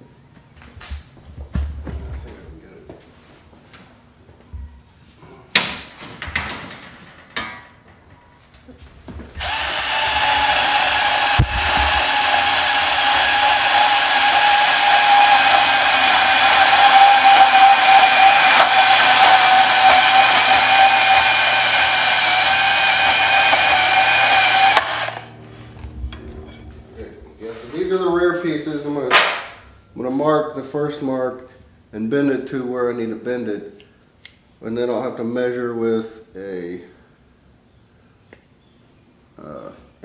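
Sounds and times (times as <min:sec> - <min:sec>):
power saw cutting steel tubing: 0:09.4 - 0:25.8.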